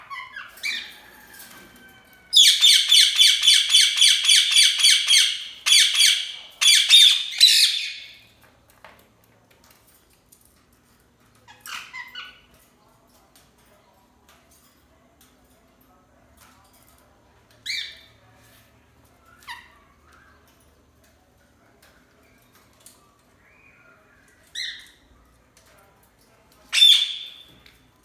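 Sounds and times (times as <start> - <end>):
parrot shrieking: 2.3 - 8.0.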